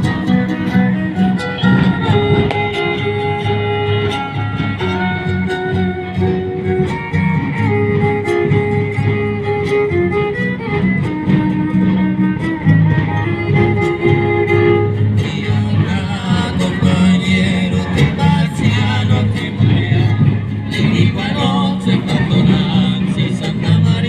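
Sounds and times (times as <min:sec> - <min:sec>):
violin melody: 0:00.0 - 0:17.8
strummed guitars: 0:00.0 - 0:24.0.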